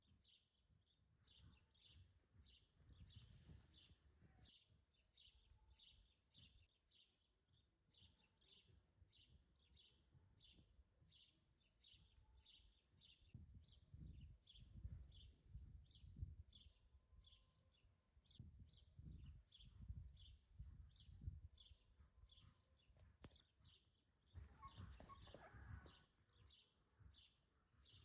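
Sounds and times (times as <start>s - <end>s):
bird chirping faintly: 8.0s - 28.0s.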